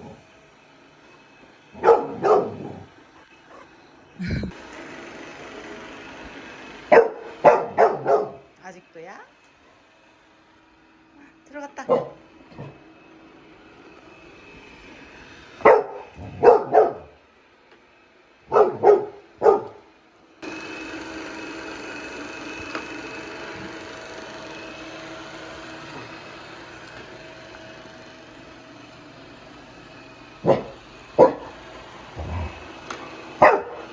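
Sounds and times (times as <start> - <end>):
robot vacuum whirring: 0.0 - 33.9
puppy barking: 1.8 - 2.9, 6.9 - 8.5, 11.9 - 12.8, 15.6 - 17.2, 18.5 - 19.8, 30.4 - 31.6, 33.4 - 33.9.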